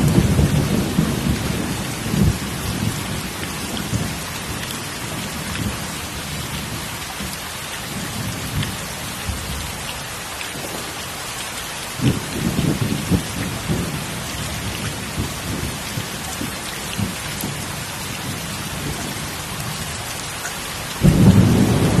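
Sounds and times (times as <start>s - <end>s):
rolling thunder: 0.0s - 4.3s, 12.0s - 20.0s, 21.0s - 22.0s
heavy rain: 0.0s - 22.0s.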